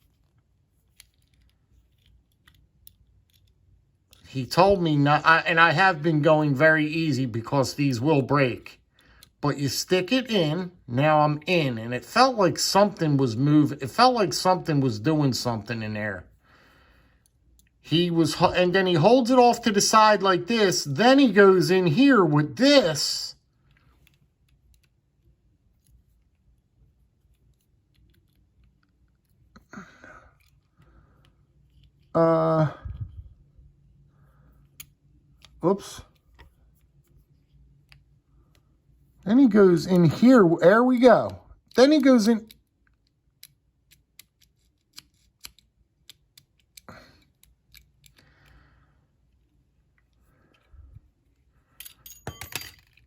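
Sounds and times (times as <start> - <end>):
lock pick clicking in lock: 42.5 - 48.2.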